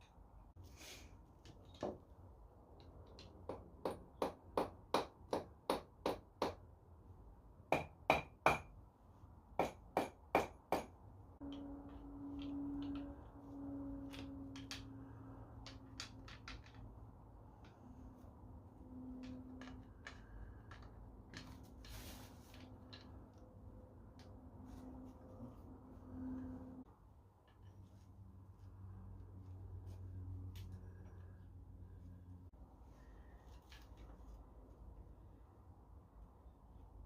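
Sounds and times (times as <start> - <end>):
low steady hum: 11.0 - 37.0.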